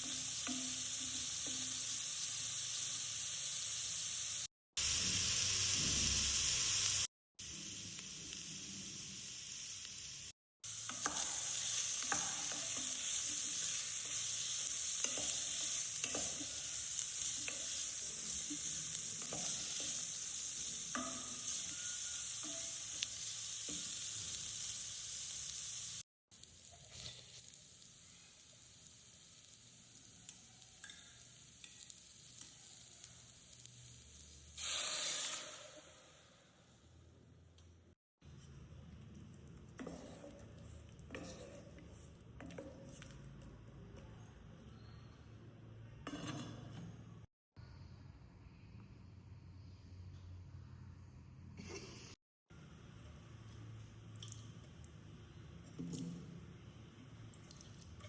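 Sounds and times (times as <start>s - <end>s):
food sizzling in hot oil: 0.0s - 36.4s
spoon ticking and scraping: 38.4s - 44.2s.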